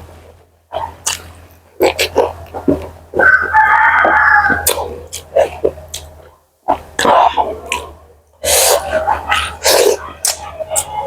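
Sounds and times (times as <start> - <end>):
wet chewing: 1.0 - 10.9
slurping and sucking bone marrow: 6.7 - 10.4.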